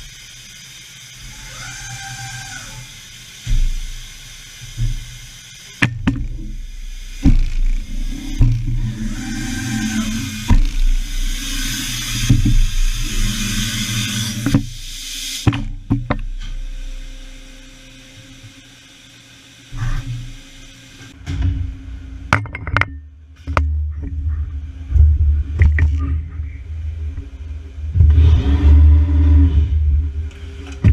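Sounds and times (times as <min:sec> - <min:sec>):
loud hiss: 0:00.0 - 0:21.3
faint steady hum: 0:00.0 - 0:30.9
machine rumble with clunks: 0:01.2 - 0:30.9.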